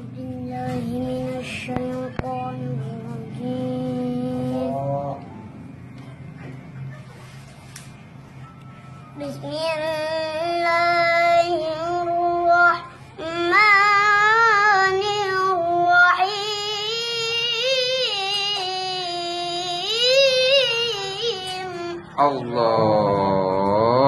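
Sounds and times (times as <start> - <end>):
child reciting melodically: 0.0 - 5.1, 9.2 - 22.2.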